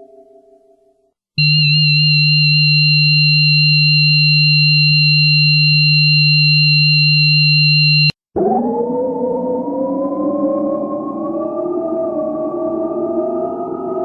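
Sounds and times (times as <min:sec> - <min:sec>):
electronic low hum with high tones: 0:01.4 - 0:08.1.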